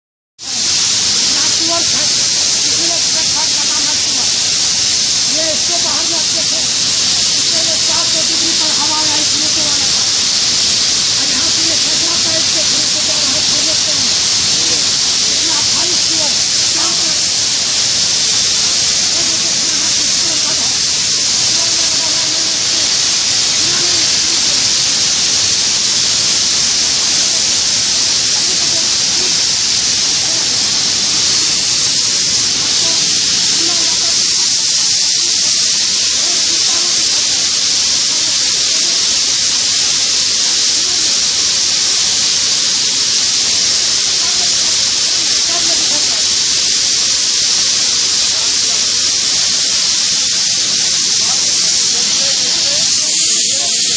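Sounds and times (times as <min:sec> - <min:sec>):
faint voices: 0:00.4 - 0:24.5, 0:44.1 - 0:46.3
loud high-pitched equipment hiss: 0:00.4 - 0:53.9.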